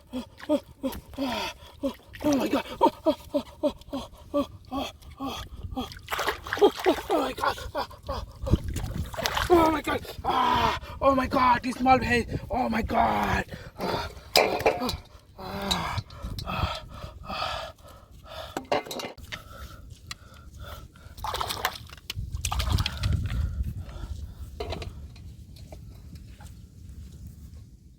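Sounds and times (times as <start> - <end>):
person exclaiming: 0.0 - 8.6, 9.3 - 15.9.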